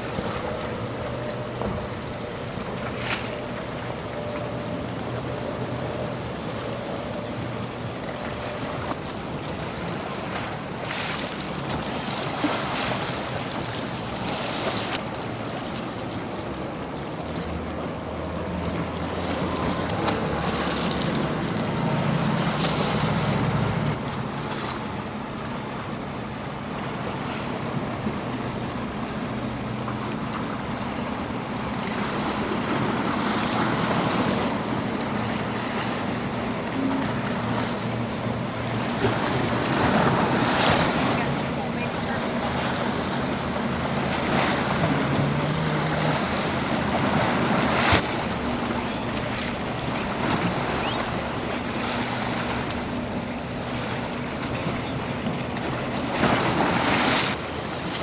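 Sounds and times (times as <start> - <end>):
boat engine running: 0.0 - 58.0
surf breaking: 26.6 - 58.0.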